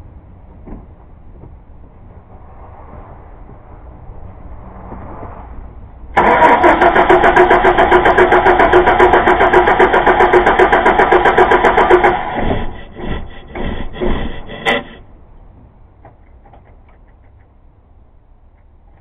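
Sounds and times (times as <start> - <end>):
starter motor cranking engine: 6.2 - 15.0.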